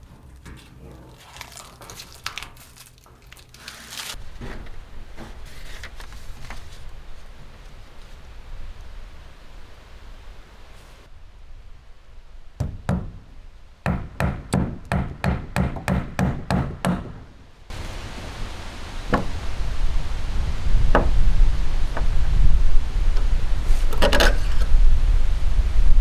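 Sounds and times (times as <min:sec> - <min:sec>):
wind buffeting microphone: 0:04.2 - 0:12.6, 0:17.7 - 0:26.0.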